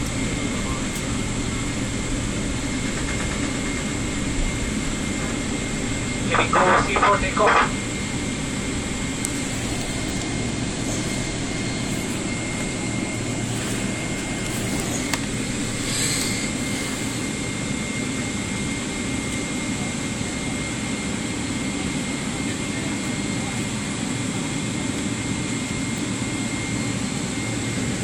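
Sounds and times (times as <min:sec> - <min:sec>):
high whine: 0:00.0 - 0:20.4
airliner cabin engine roar: 0:00.0 - 0:28.0.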